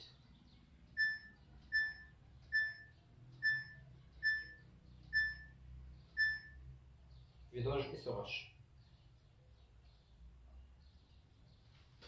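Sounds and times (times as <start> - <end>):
short electronic beeps: 1.0 - 5.6, 6.2 - 6.6.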